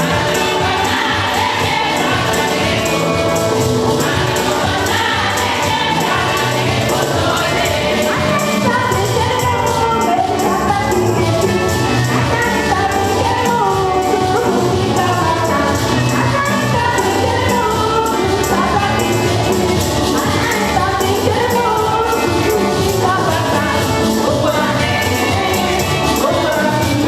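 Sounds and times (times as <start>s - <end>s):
steady beat: 0.0s - 9.6s
group singing gospel: 0.0s - 27.0s
jingling percussion: 0.0s - 27.0s.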